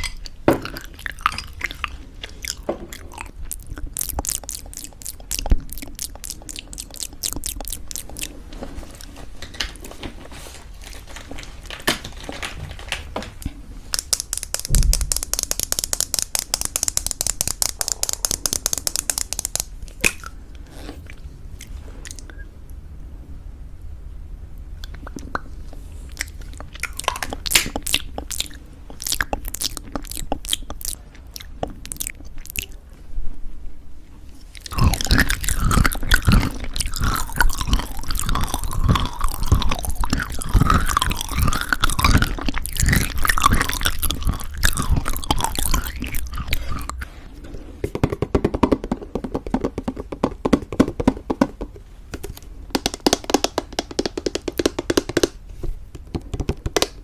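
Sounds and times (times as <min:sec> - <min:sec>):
crunchy chewing: 0:00.0 - 0:10.0, 0:13.9 - 0:22.4, 0:24.8 - 0:32.8, 0:34.4 - 0:47.2.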